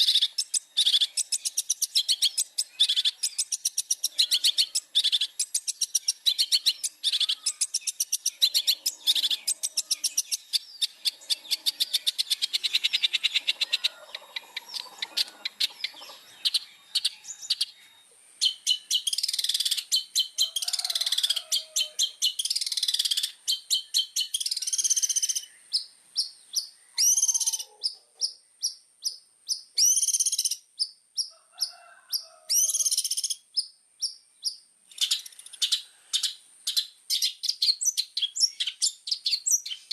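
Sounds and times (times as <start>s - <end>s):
shrike singing: 0.0s - 31.3s.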